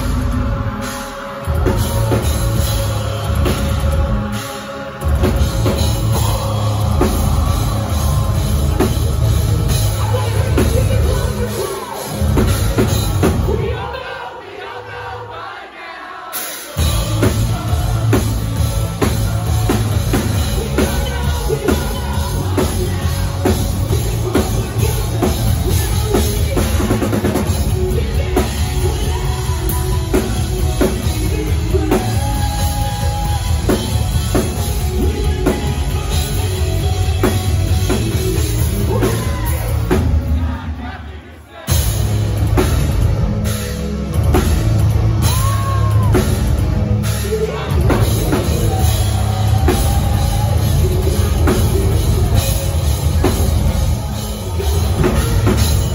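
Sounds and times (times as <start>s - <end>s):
distorted guitars: 0.0s - 13.9s, 16.3s - 41.0s, 41.6s - 55.9s
live rock band playing: 0.0s - 13.9s, 16.3s - 40.9s, 41.6s - 55.9s
pounding drums: 0.0s - 14.2s, 16.3s - 55.9s
person singing: 0.0s - 15.4s, 16.3s - 40.7s.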